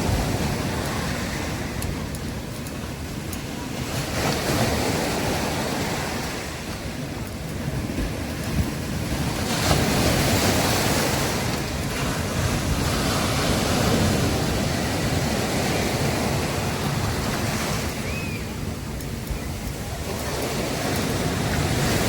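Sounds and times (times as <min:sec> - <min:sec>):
sea waves breaking: 0:00.0 - 0:22.0.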